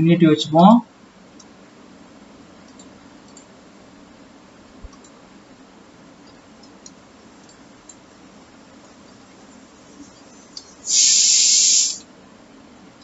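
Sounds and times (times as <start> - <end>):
microphone hiss: 0.0 - 13.0
computer mouse clicks: 2.7 - 3.5, 4.9 - 5.2, 6.2 - 8.0.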